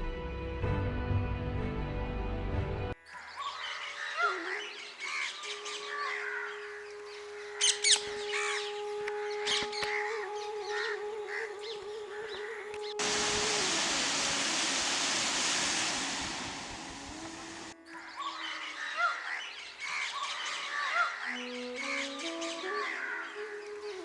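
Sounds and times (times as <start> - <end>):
music: 0.0 - 3.0, 5.5 - 14.8, 21.2 - 24.0
birds chirping: 3.0 - 13.3, 14.9 - 24.0
rushing noise: 13.0 - 17.8
steady low tone: 13.0 - 17.8.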